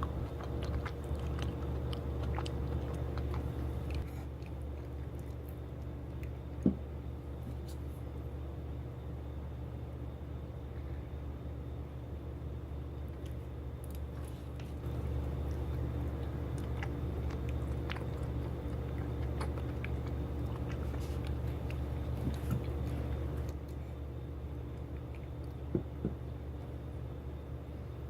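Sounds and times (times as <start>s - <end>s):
steady low hum: 0.0s - 28.0s.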